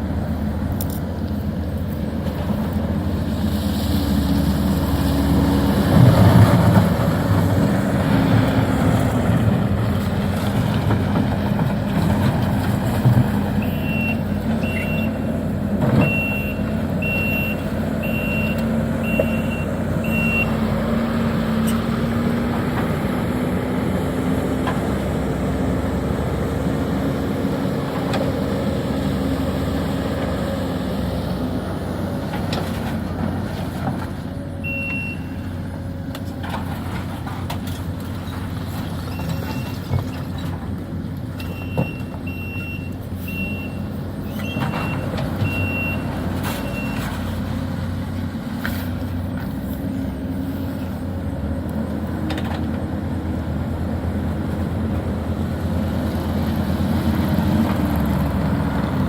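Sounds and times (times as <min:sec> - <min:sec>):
excavator diesel engine running: 0:00.0 - 0:59.0
backup alarm beeping: 0:13.6 - 0:15.3, 0:16.0 - 0:20.6.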